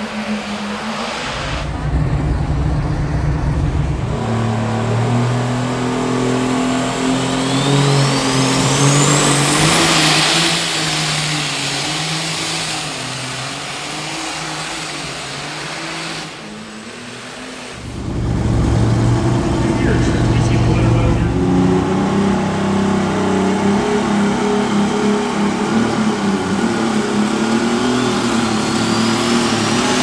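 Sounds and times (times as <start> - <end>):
turbocharger whistle: 1.0 - 10.8, 17.8 - 30.0
tractor engine under load: 1.2 - 7.2, 17.8 - 23.5.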